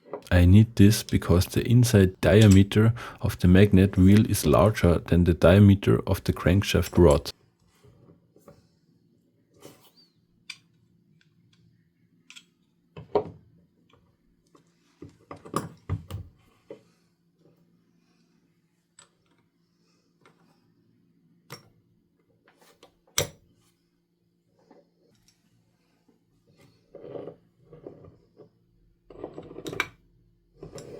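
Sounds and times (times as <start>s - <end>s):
faint steady hum: 0.3s - 7.3s.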